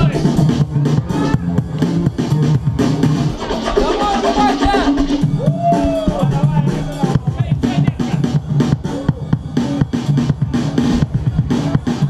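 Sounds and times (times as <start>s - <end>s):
breakbeat battle music: 0.0s - 12.0s.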